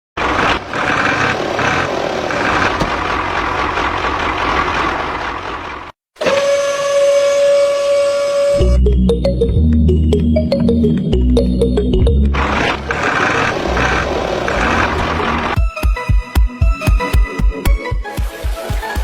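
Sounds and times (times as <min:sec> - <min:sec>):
small motor running roughly: 0:00.2 - 0:04.4, 0:12.3 - 0:15.6.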